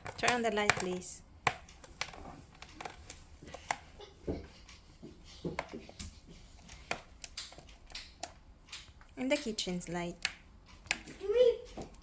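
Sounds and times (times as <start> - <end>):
light clicks and taps: 4.5 - 12.0.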